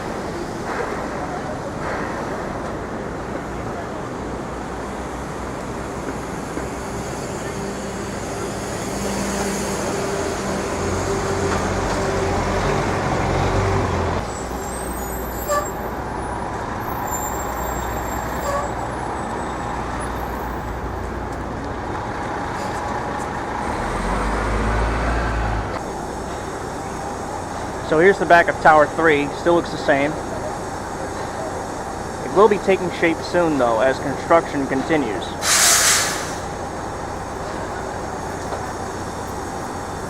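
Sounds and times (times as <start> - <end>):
city street traffic: 0.0 - 40.0
heavy vehicle engine running: 0.0 - 40.0
low engine rumble: 0.0 - 40.0
brief high squeals: 14.3 - 16.0, 16.8 - 18.8.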